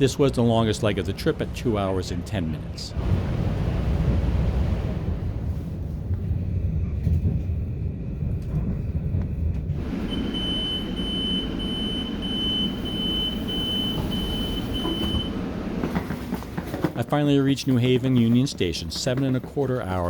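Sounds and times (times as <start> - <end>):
electric train rumbling: 0.0 - 20.0
high electronic beep tone: 10.1 - 15.3.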